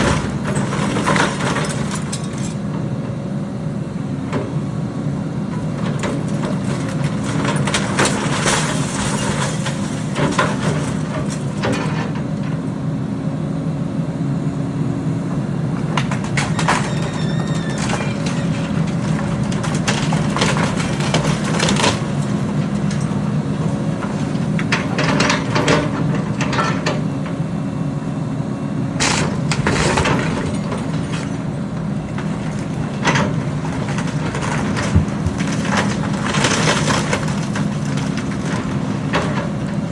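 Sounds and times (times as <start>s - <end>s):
excavator diesel engine running: 0.0s - 39.9s
creaking squeal: 16.4s - 18.8s.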